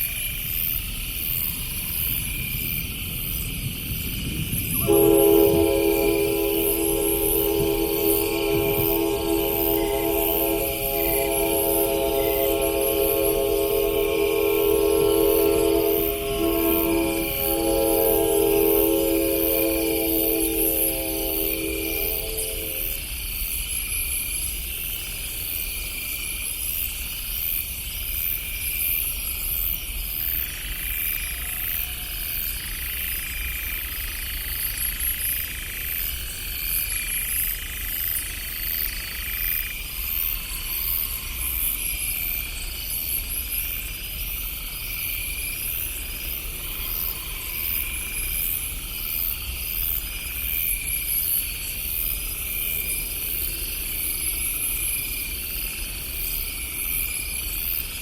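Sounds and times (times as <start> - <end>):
night insects chirping: 0.0 - 58.0
faint drawn-out tone: 4.8 - 23.1.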